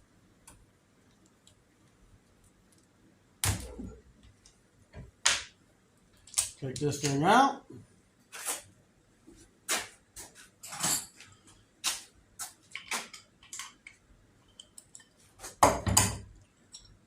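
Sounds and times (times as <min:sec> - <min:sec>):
light clicks and metallic clinks: 0:12.7 - 0:15.3, 0:16.3 - 0:17.0.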